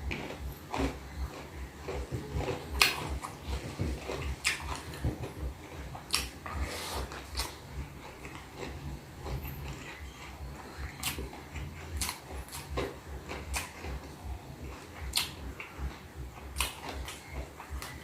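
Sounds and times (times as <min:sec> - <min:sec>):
chewing food: 0:00.0 - 0:18.0
wet mouth clicks: 0:06.0 - 0:07.6, 0:09.7 - 0:14.1, 0:15.0 - 0:15.9, 0:16.5 - 0:18.0.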